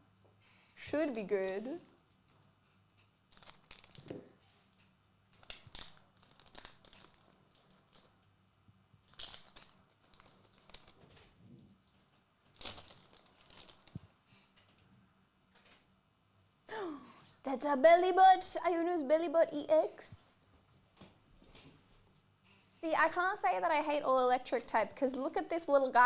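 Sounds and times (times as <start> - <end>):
wrappers crinkling and tearing: 1.1 - 2.6, 3.2 - 4.2, 5.3 - 8.3, 9.0 - 11.2, 12.0 - 14.1.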